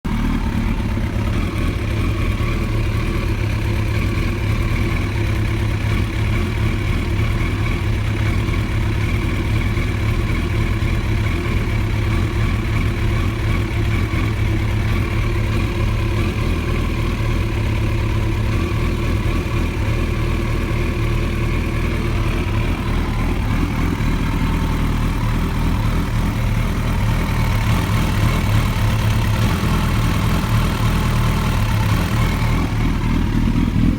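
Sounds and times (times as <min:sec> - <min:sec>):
engine idling roughly: 0:00.1 - 0:33.9.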